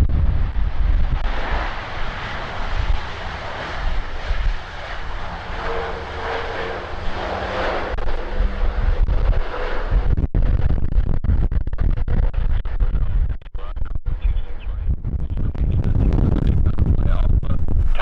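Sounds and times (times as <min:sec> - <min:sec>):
jet engines roaring: 0:00.0 - 0:10.2
wind buffeting microphone: 0:00.0 - 0:18.0.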